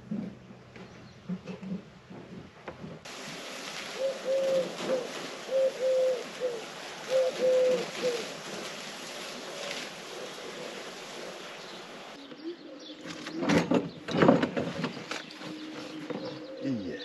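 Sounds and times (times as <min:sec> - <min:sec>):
dove cooing: 0:03.8 - 0:13.7, 0:15.3 - 0:17.0.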